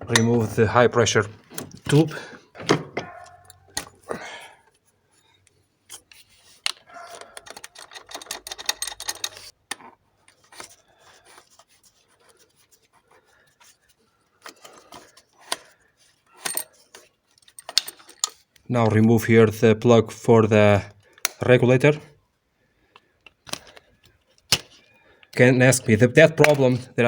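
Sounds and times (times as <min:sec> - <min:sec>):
hand tools on metal fittings: 0:00.0 - 0:12.0, 0:14.4 - 0:19.2, 0:26.4 - 0:26.8.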